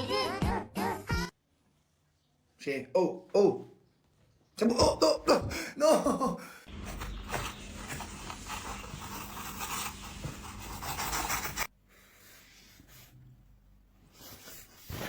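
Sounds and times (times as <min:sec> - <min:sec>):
hamster scratching and rustling: 0:06.8 - 0:11.7.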